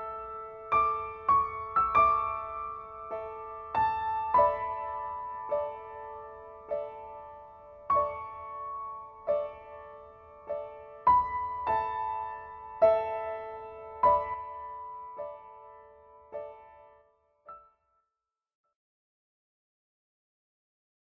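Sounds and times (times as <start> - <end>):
slow piano music: 0.0 - 18.0.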